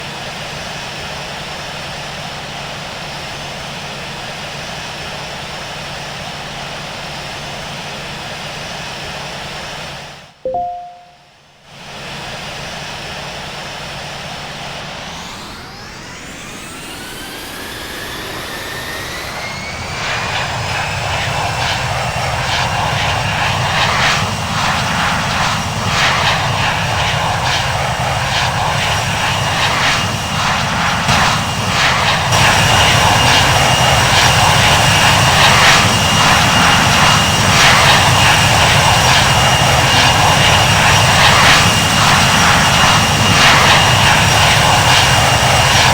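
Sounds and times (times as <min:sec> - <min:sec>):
jet engines spooling up: 0:14.5 - 0:45.9.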